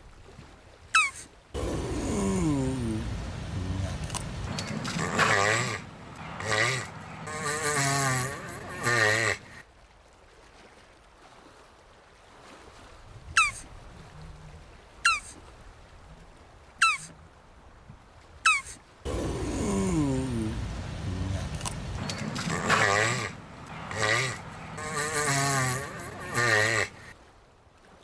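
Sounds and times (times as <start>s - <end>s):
tortoise groaning call: 1.0s - 9.6s, 18.5s - 27.2s.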